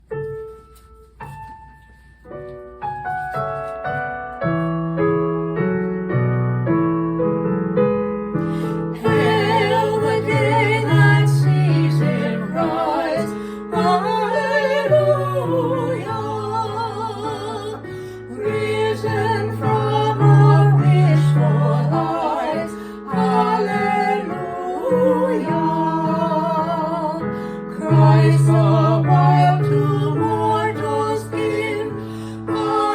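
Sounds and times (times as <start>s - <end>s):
piano playing: 0.0s - 32.9s
women singing with vibrato: 8.9s - 32.9s.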